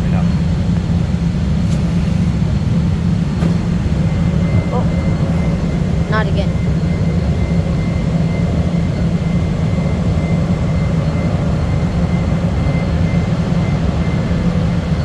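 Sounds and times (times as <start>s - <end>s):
train low rumble: 0.0s - 15.0s
faint high tone: 4.5s - 6.7s.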